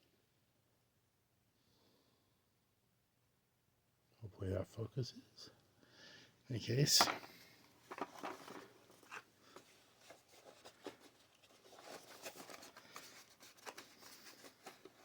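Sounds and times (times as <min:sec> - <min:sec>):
cardboard box rustling: 0:07.0 - 0:15.0.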